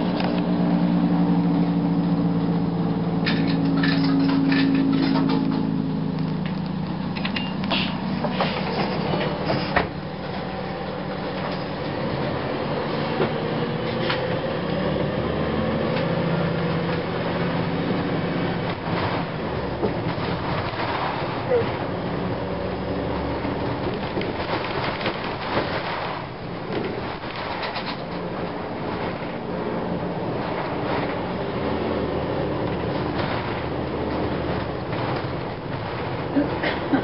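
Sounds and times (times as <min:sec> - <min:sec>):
bus engine drone: 0:00.0 - 0:37.0
drivetrain whine: 0:00.0 - 0:37.0
body rattles and clicks: 0:18.6 - 0:22.4, 0:23.4 - 0:37.0.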